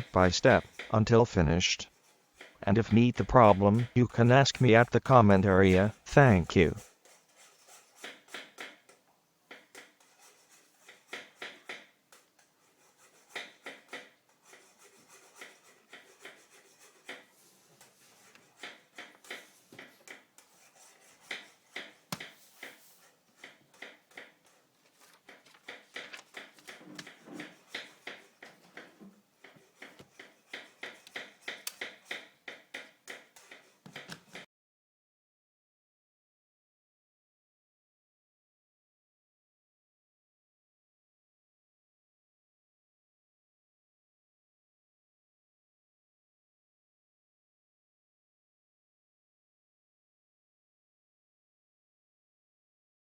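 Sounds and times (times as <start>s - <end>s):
tools clicking and tapping on laptop: 2.0s - 34.4s.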